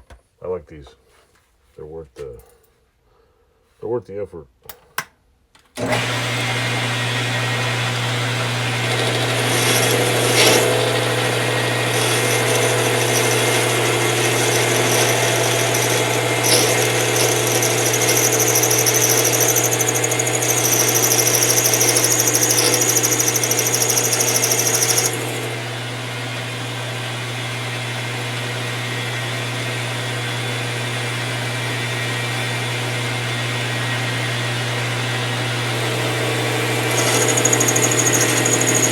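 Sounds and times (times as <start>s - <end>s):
lathe tool cutting metal: 5.9s - 26.0s, 35.8s - 38.9s
metal lathe humming: 6.0s - 26.2s, 35.8s - 38.9s.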